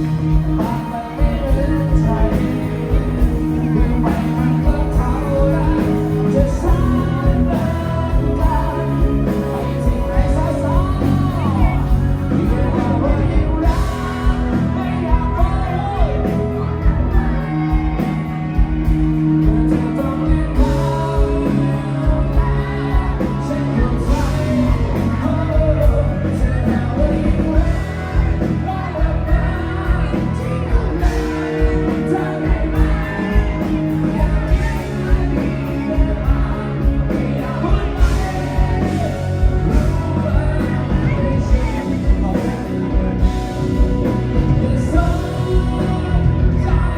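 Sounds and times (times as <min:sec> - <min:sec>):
live band with singer: 0:00.0 - 0:46.9.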